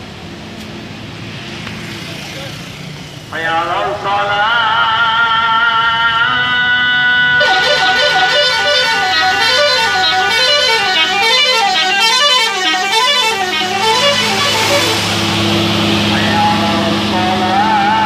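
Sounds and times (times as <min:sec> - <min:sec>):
bus musical horn: 0:05.8 - 0:15.2.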